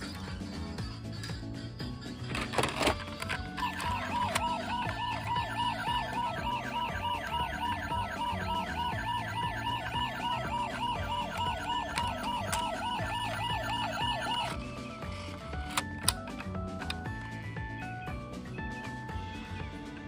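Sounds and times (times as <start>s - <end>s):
toy siren warbling: 3.4s - 15.1s.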